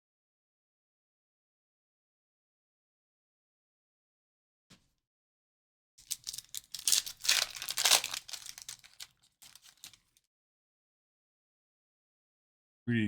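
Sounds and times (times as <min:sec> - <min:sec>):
foil wrapper tearing and crinkling: 0:06.0 - 0:10.2.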